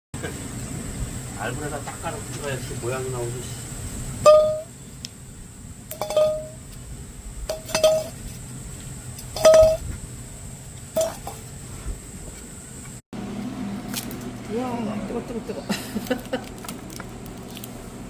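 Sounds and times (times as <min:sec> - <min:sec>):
metal clinking against metal: 0:05.9 - 0:06.6, 0:07.5 - 0:08.2, 0:09.4 - 0:09.8.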